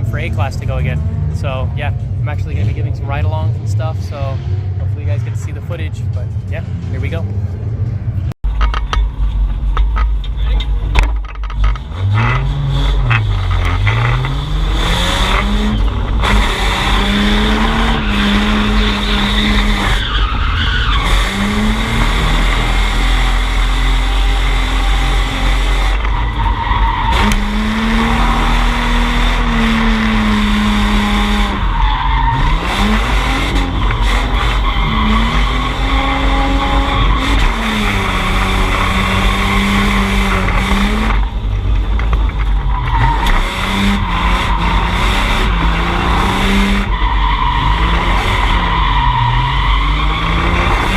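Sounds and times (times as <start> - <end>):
car engine revving: 0.0 - 50.9
tires skidding and squealing: 11.5 - 50.9.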